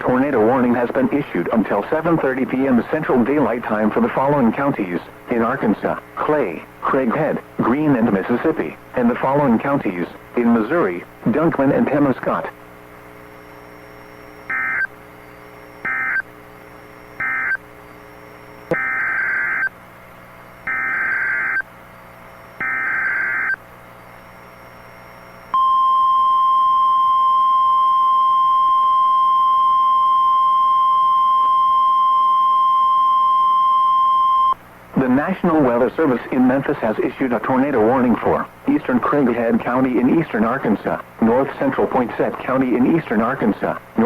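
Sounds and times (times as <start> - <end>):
buzzing data bursts: 11.3 - 19.8, 20.5 - 25.6
steady alarm tone: 13.5 - 14.9, 15.6 - 19.7, 20.6 - 21.7, 22.4 - 23.6.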